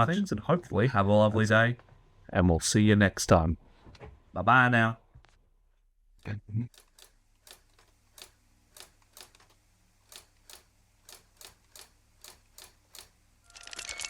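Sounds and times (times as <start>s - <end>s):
typewriter keys clacking: 10.1s - 14.0s.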